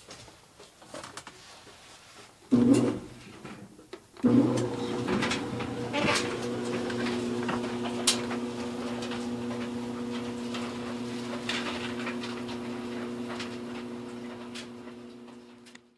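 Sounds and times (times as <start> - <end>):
dryer motor hum: 4.2 - 15.9.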